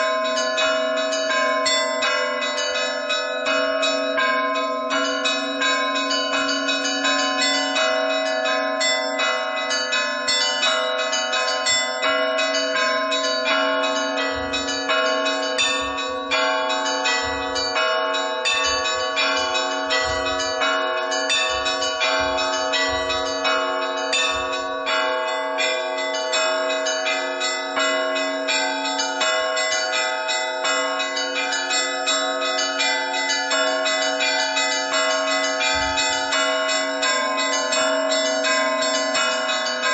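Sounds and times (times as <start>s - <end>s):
large bells ringing: 0.0s - 39.9s
small church bells ringing rapidly: 0.0s - 39.9s.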